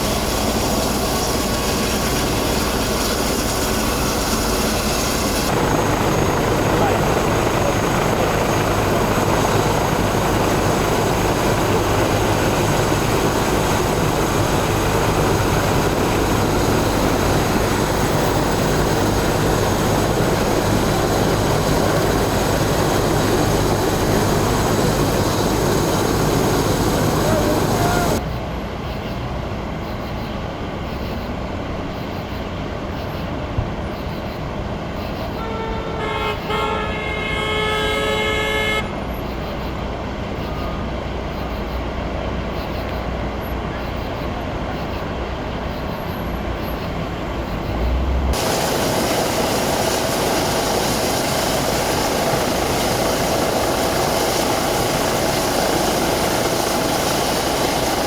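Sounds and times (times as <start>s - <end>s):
bright hiss: 0.0s - 28.2s, 48.4s - 58.0s
vehicles rumbling: 0.0s - 50.2s
vehicle horn: 35.4s - 39.1s.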